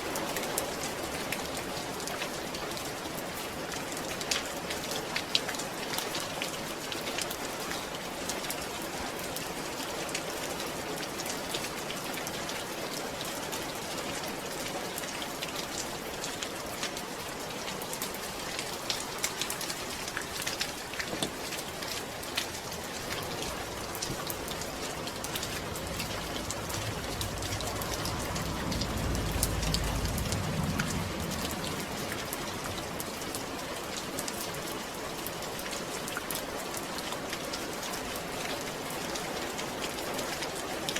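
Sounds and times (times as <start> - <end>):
rain drops ticking: 0.0 - 40.9
low rumble: 22.5 - 34.0.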